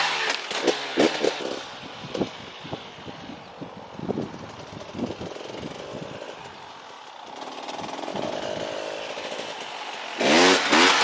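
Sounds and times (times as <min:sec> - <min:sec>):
two-stroke engine running: 0:03.6 - 0:11.0.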